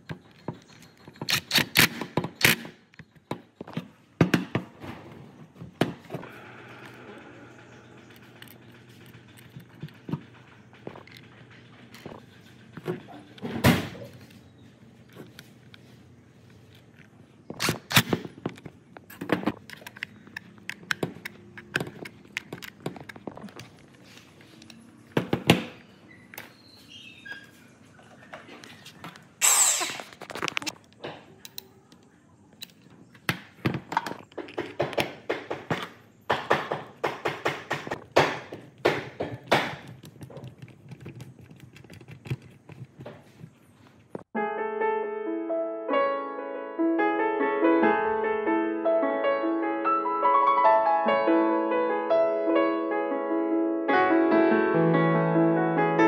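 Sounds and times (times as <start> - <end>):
hand tools and metal parts knocking: 0.0 - 14.4, 16.7 - 26.8, 28.1 - 44.3
short hiss: 29.4 - 30.1
piano music: 44.3 - 56.0.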